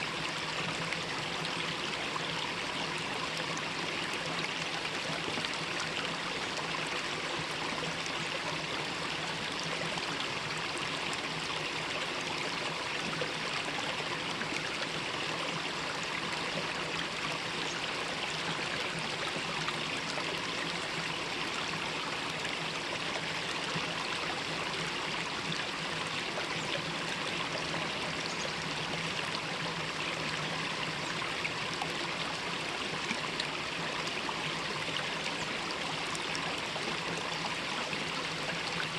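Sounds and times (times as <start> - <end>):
stream water running over rocks: 0.0 - 38.9.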